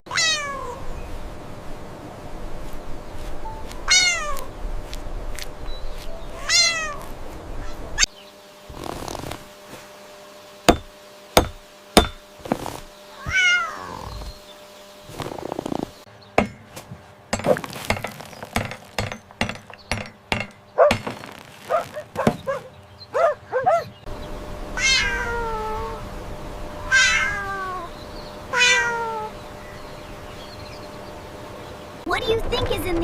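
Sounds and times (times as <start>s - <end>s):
cat meowing: 0.1s - 0.8s, 3.9s - 4.4s, 6.4s - 7.0s, 13.2s - 14.1s, 24.8s - 26.0s, 26.8s - 27.9s, 28.5s - 29.3s.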